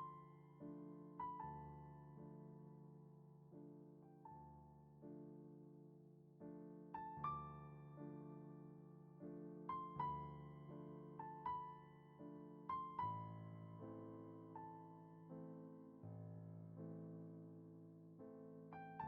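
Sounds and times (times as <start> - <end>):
soft piano music: 0.0 - 19.0.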